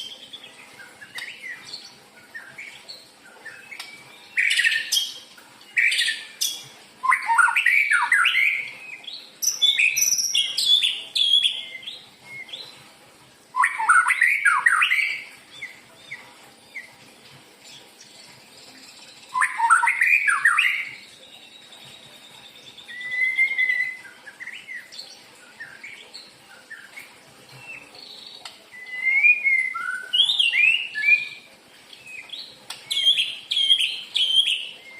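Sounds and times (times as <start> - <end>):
bird singing whistled phrases: 5.8 - 12.7, 13.6 - 16.2, 19.3 - 34.9.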